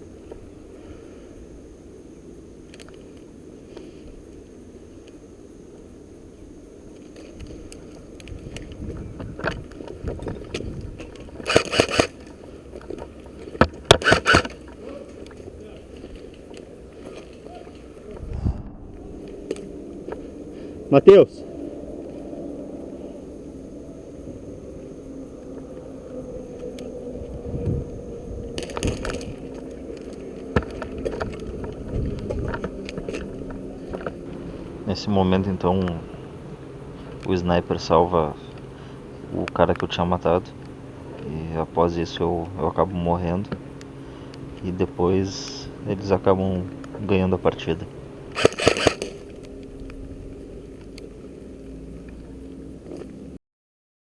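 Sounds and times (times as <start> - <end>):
sharp clicks and cracks: 10.5 - 15.4, 48.3 - 50.0
airsoft gun shots: 11.5 - 12.1, 13.9 - 14.5, 48.4 - 49.2
steady low rumble: 17.9 - 35.0, 45.7 - 52.5.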